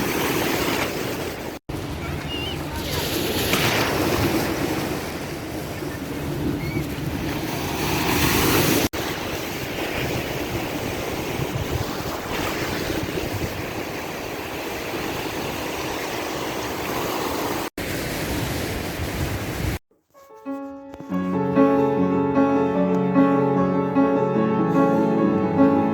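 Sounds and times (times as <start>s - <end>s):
surf washing in: 0.0s - 19.8s
wind on microphone: 4.0s - 17.0s.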